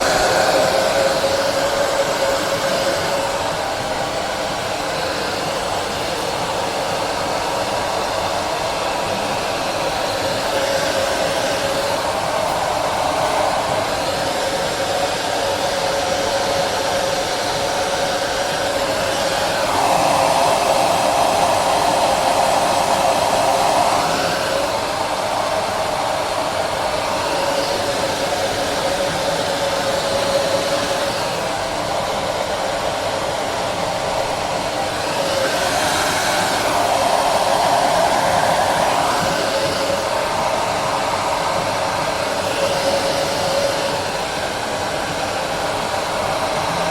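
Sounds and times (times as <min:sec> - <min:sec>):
hair dryer running: 0:00.0 - 0:46.9.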